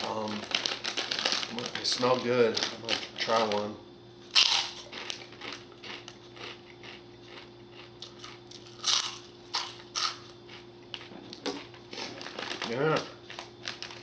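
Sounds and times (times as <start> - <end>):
chewing crunchy food: 4.3 - 14.0.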